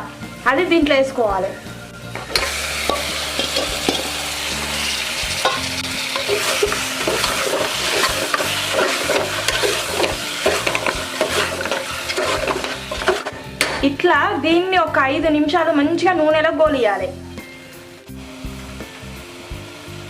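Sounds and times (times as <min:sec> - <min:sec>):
meat sizzling in hot oil: 0:01.6 - 0:13.6, 0:18.1 - 0:20.0
spoon scraping a pot: 0:02.2 - 0:04.1, 0:04.8 - 0:13.4.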